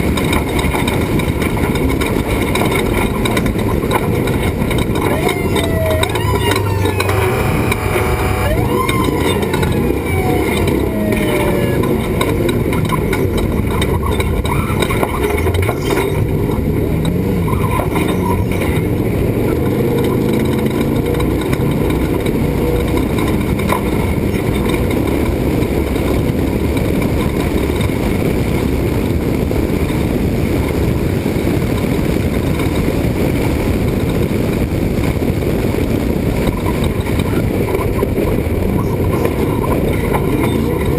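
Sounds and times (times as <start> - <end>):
truck engine running hard: 0.0 - 40.9
wind and road noise: 0.0 - 40.9
falling whines: 3.4 - 16.3.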